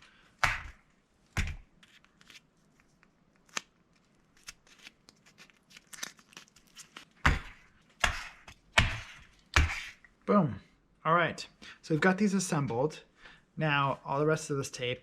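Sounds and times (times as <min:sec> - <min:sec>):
cardboard and tape crinkling: 0:03.4 - 0:07.2.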